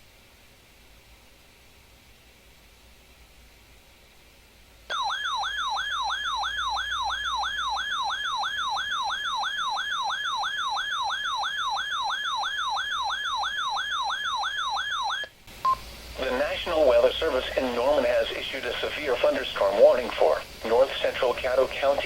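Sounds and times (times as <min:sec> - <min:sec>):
warbling siren alarm: 0:04.9 - 0:15.3.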